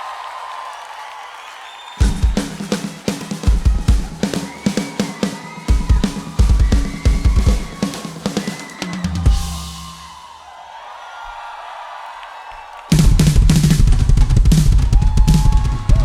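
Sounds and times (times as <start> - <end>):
drum kit fills: 2.0 - 10.3, 12.9 - 16.0.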